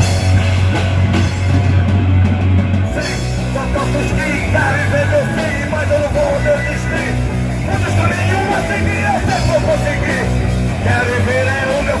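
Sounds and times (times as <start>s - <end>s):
rock band playing: 0.0s - 12.0s
person singing: 2.9s - 12.0s.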